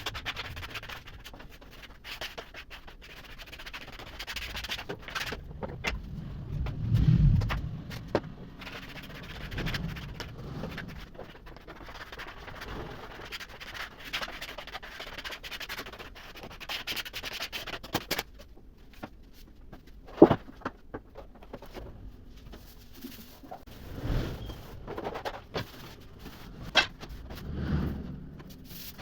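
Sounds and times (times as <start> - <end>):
rubbing and scraping on wood: 0.0 - 18.0.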